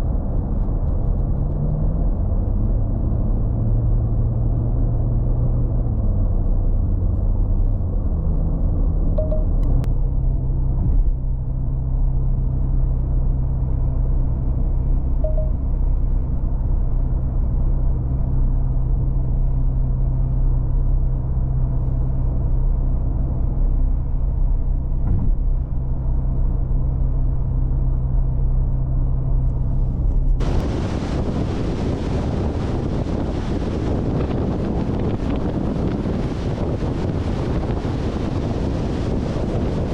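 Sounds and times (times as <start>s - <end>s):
car engine cruising: 0.0s - 39.9s
wind noise rushing: 30.4s - 39.9s.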